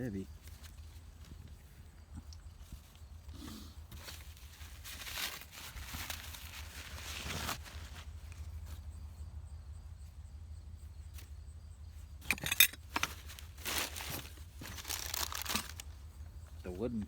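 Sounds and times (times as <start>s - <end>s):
rustling handling noise: 0.0s - 1.8s, 3.8s - 9.0s, 12.0s - 16.8s
steady low hum: 0.0s - 17.0s
small metal objects clinking on glass: 12.2s - 13.1s.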